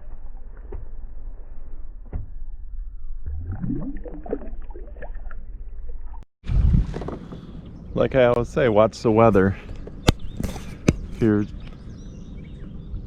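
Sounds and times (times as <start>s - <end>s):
wind rumbling on microphone: 3.0s - 8.6s.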